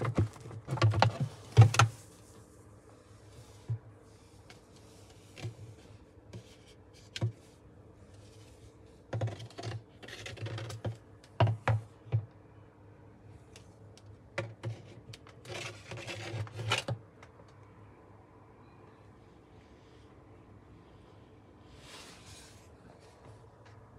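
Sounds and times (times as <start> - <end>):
faint low hum: 0.0 - 23.9
scratching and rubbing: 14.6 - 16.9.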